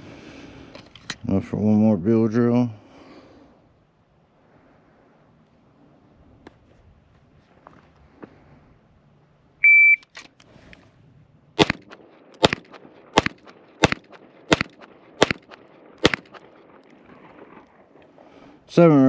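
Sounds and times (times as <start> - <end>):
shot timer beep: 9.6 - 10.0
pistol shots: 11.6 - 17.7.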